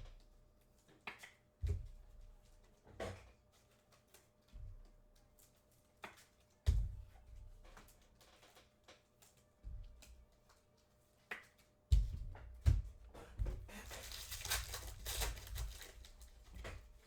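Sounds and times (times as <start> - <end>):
foil wrapper tearing and crinkling: 13.8 - 16.6.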